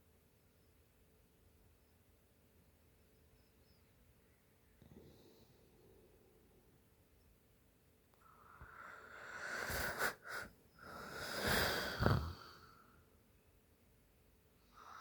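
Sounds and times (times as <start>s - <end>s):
woman snoring: 8.4s - 12.8s.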